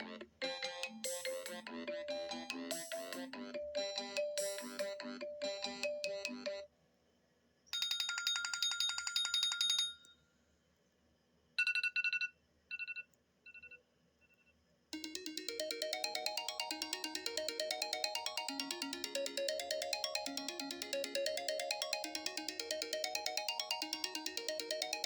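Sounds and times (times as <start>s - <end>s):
melodic ringtone: 0.0s - 6.7s, 15.0s - 25.0s
ringtone with rising notes: 0.0s - 6.7s, 15.0s - 25.0s
fast pulsing high-pitched tone: 15.0s - 25.0s.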